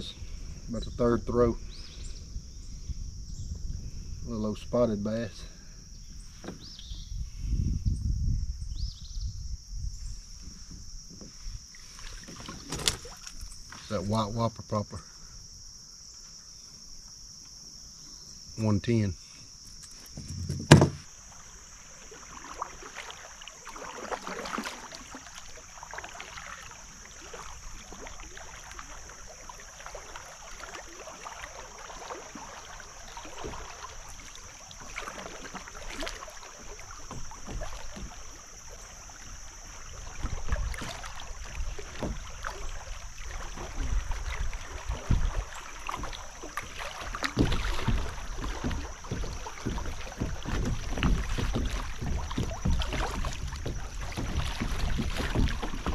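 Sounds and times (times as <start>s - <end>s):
insects chirring: 0.0s - 55.9s
kayak splashes and knocks: 6.0s - 7.3s, 9.3s - 15.1s, 19.5s - 55.9s.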